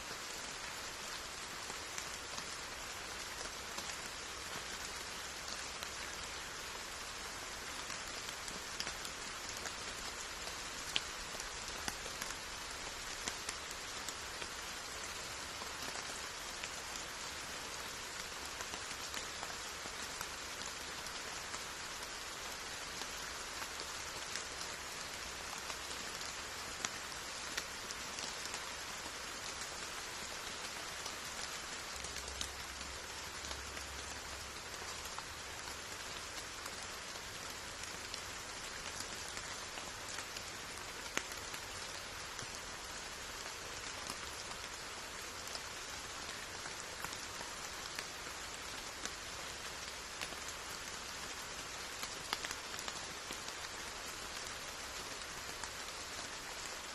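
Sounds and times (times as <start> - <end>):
steady rain hiss: 0.0 - 56.9
rain drop ticks: 31.4 - 42.6, 45.4 - 49.2, 52.0 - 53.8.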